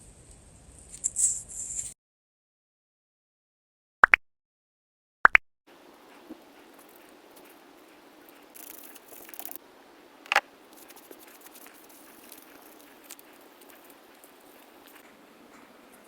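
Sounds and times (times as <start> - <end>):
brief scratchy hiss: 0.8 - 2.0.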